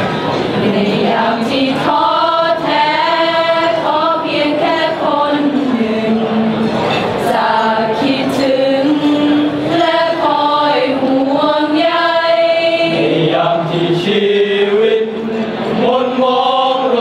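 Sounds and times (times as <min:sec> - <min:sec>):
choir singing in harmony: 0:00.4 - 0:17.0.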